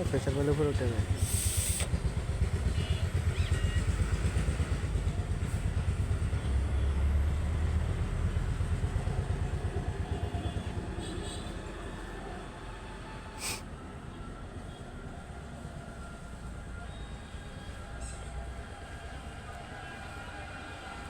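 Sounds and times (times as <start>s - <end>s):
diesel engine idling: 0.0s - 11.2s.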